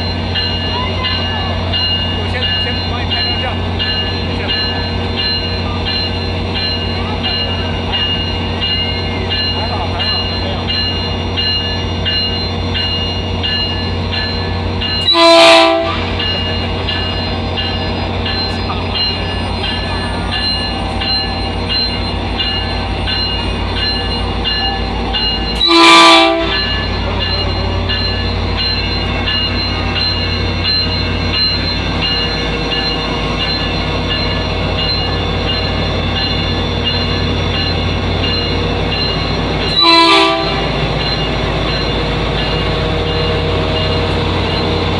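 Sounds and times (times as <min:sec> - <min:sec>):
train running drone: 0:00.0 - 0:44.9
train horn blasts: 0:15.0 - 0:16.2, 0:25.6 - 0:26.8, 0:39.7 - 0:40.8.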